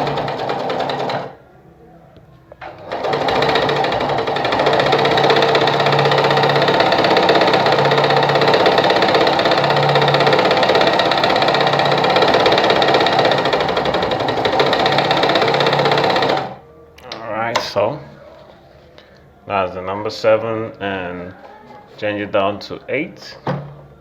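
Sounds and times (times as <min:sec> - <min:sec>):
sewing machine running: 0:00.0 - 0:01.4, 0:02.6 - 0:16.6.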